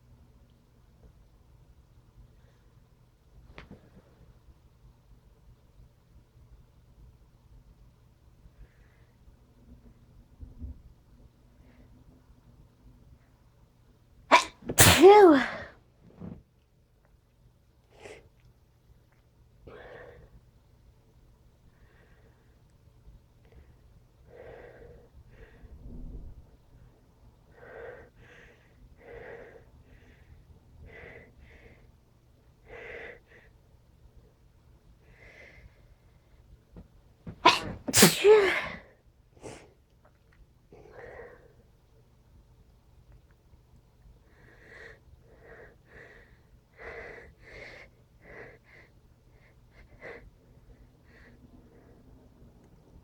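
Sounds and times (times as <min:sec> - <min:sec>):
person sneezing: 0:14.3 - 0:15.7, 0:37.3 - 0:38.8.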